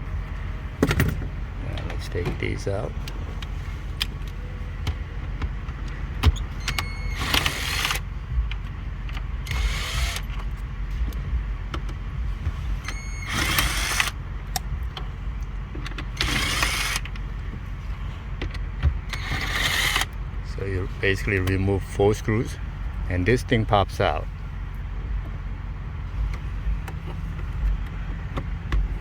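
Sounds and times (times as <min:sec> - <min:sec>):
steady low rumble: 0:00.0 - 0:29.0
power screwdriver whirring: 0:06.6 - 0:08.0, 0:09.4 - 0:10.3, 0:12.9 - 0:14.2, 0:16.2 - 0:17.1, 0:19.1 - 0:20.2.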